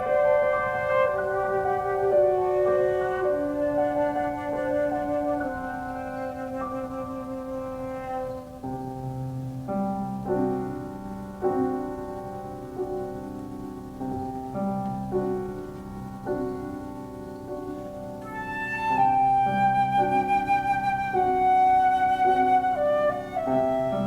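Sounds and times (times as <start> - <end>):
flute high held note: 0.0 - 8.5, 18.2 - 24.0
piano chords: 0.0 - 24.0.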